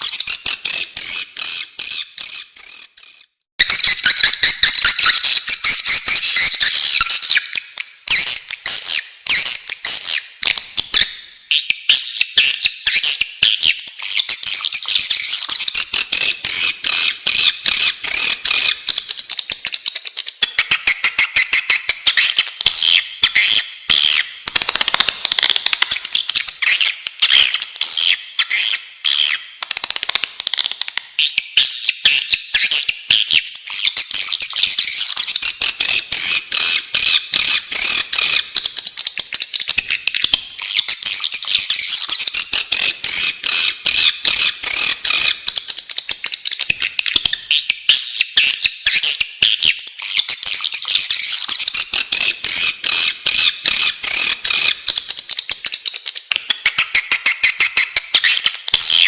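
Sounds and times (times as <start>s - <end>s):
swiftlets chirping: 24.5s - 26.8s.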